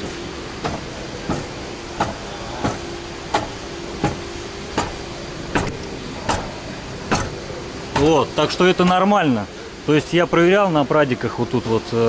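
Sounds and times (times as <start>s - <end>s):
steering rack knocking: 0.0s - 9.0s
steady hum: 0.0s - 12.0s.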